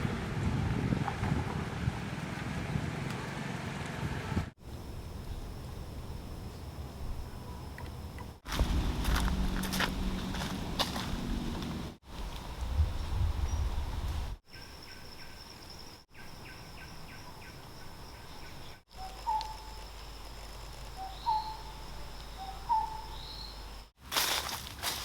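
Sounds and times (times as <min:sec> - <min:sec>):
low rumble: 0:08.5 - 0:11.9
bird whistled call: 0:21.0 - 0:21.7, 0:22.3 - 0:23.6.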